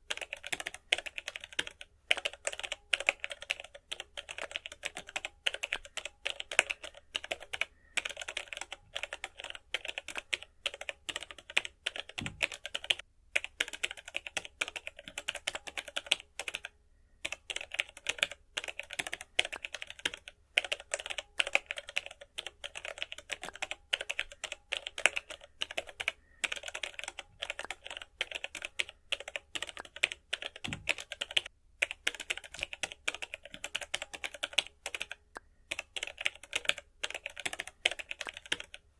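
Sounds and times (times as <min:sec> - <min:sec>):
rapid light clicking and tapping: 0:00.0 - 0:16.7.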